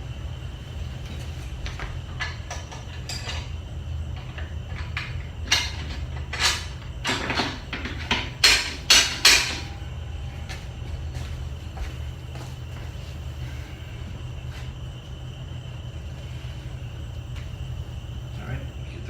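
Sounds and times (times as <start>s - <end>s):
steady low hum: 0.0s - 19.0s
metal parts clinking and clanking: 2.1s - 9.9s.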